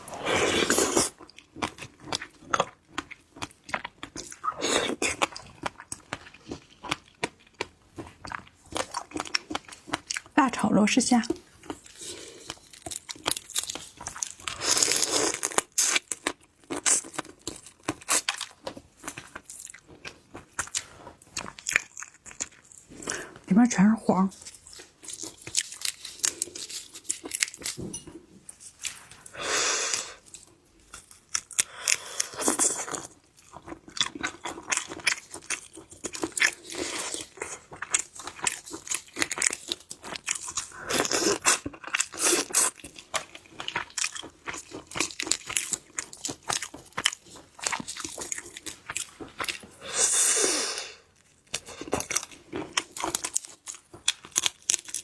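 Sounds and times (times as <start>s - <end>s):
chewing: 0.1s - 10.4s, 11.2s - 23.4s, 24.3s - 27.8s, 28.5s - 55.0s
shrimp shells crunching in chewing: 0.1s - 10.4s, 11.4s - 23.2s, 24.3s - 27.8s, 28.6s - 55.0s.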